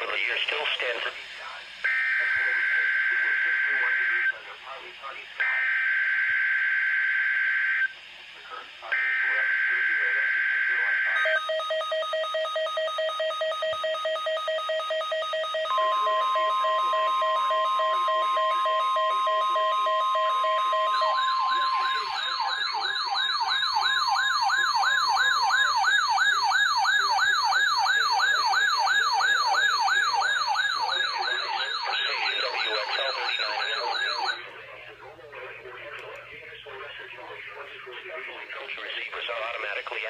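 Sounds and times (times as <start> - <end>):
steady alarm tone: 0.0 - 40.0
warbling alert siren: 1.8 - 4.5, 5.4 - 7.9, 8.8 - 34.5
rapid beeping tone: 8.9 - 40.0.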